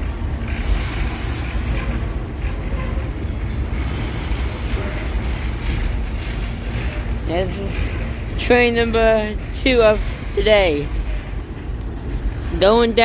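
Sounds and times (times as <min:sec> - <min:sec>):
freight train wheels rumbling on rail: 0:00.0 - 0:13.0.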